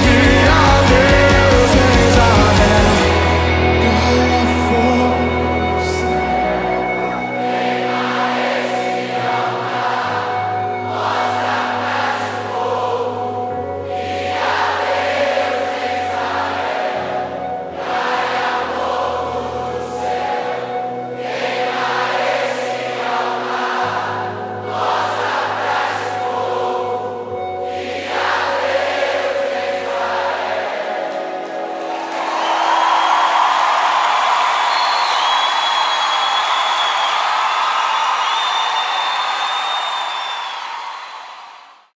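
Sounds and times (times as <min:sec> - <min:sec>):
sustained bass notes: 0:00.0 - 0:32.0
choir singing: 0:00.0 - 0:35.3.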